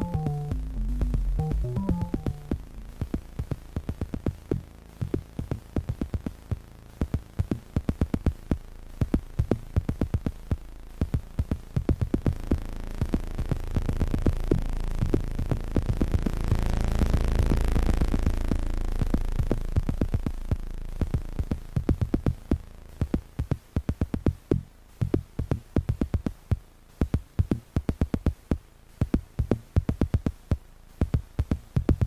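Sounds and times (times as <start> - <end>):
clicky synth hits: 0.0 - 6.4
low droning bass: 0.0 - 23.3.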